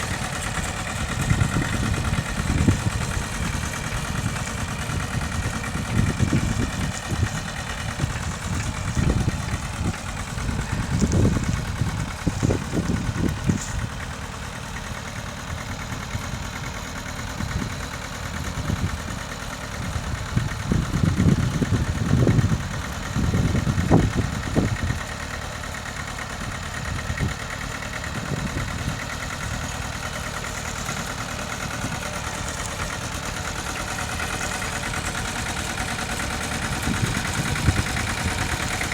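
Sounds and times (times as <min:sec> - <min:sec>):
low rumbling: 0:00.0 - 0:14.1
tractor engine running: 0:00.0 - 0:38.9.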